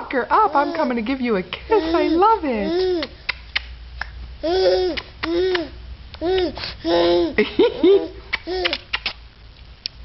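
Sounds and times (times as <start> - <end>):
baby babbling and cooing: 0.4 - 0.9, 1.7 - 3.4, 4.4 - 7.4, 8.0 - 9.1
lip-smacking kiss clicks: 3.0 - 4.2, 5.0 - 6.5, 8.3 - 9.2.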